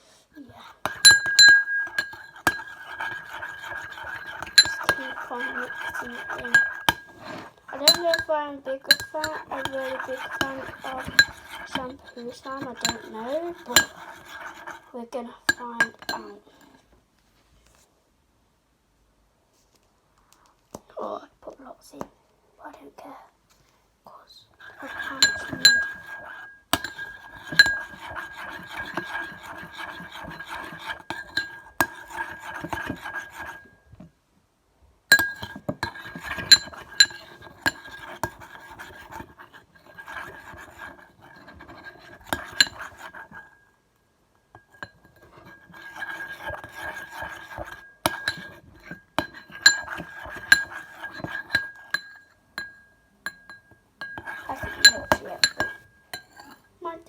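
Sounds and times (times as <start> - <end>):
utensil stirring thick mixture: 0.4 - 16.9, 24.6 - 34.1, 35.1 - 43.7, 44.4 - 57.0
utensil clinking against container: 0.7 - 14.9, 15.5 - 16.7, 24.6 - 33.8, 35.1 - 43.6, 44.6 - 56.6.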